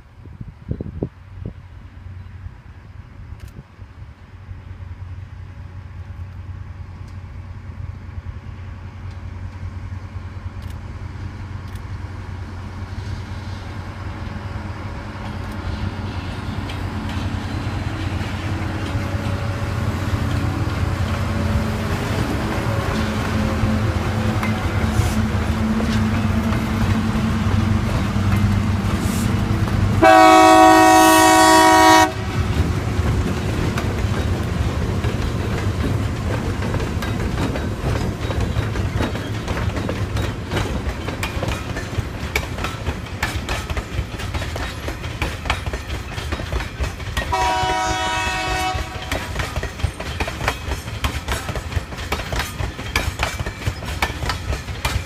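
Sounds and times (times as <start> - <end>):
train wagons rumbling: 0.8 - 55.0
wheels clacking over rail joints: 14.2 - 55.0
locomotive horn blasts: 30.0 - 32.3, 47.3 - 49.3.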